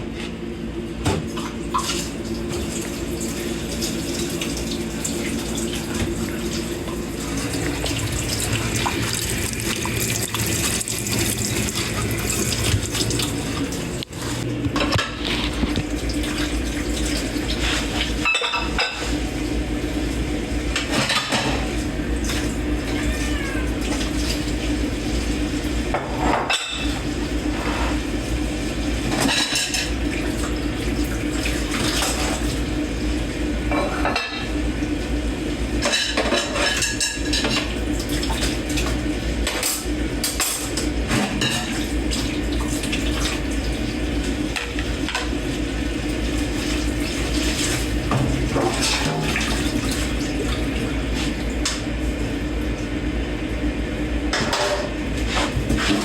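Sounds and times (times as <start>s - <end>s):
tap running: 5.7s - 16.6s
dishes and cutlery clattering: 18.2s - 19.0s, 35.8s - 37.7s.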